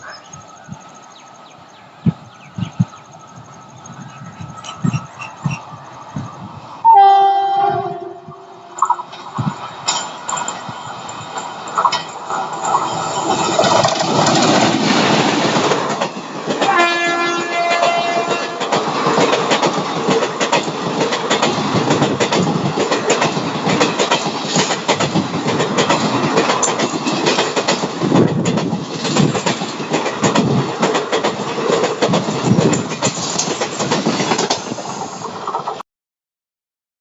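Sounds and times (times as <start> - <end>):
train coaches rushing past: 0.0 - 35.8
wheels clicking over rail joints: 8.8 - 35.8.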